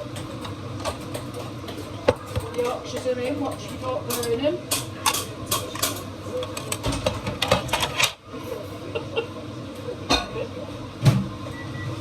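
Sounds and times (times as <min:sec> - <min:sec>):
dishes and cutlery clinking: 0:00.1 - 0:08.2.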